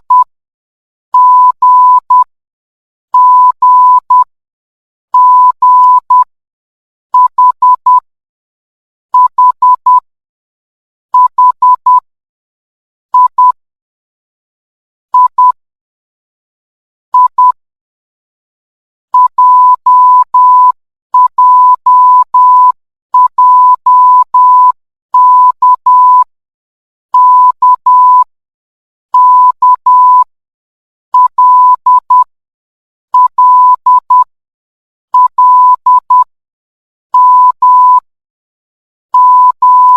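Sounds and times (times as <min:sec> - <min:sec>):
morse code beeps: 0:00.0 - 0:00.3, 0:01.2 - 0:02.3, 0:03.2 - 0:04.3, 0:05.2 - 0:06.3, 0:07.2 - 0:08.0, 0:09.2 - 0:10.0, 0:11.2 - 0:12.0, 0:13.2 - 0:13.6, 0:15.2 - 0:15.6, 0:17.2 - 0:17.6, 0:19.2 - 0:26.3, 0:27.2 - 0:28.3, 0:29.2 - 0:30.3, 0:31.2 - 0:32.3, 0:33.2 - 0:34.3, 0:35.2 - 0:36.3, 0:37.2 - 0:38.1, 0:39.2 - 0:39.9.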